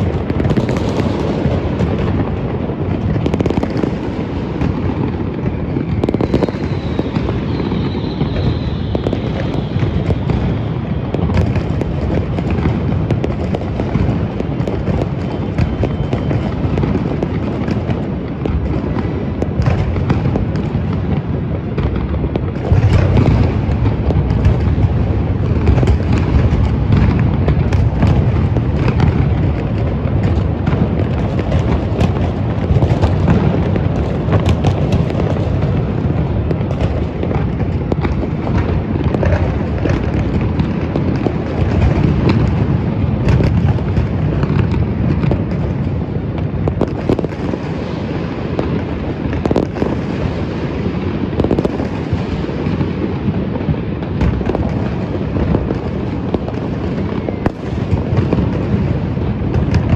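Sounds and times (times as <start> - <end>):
deep rumble of firework booms: 0.0 - 59.9
sharp bangs and crackles: 0.0 - 59.9.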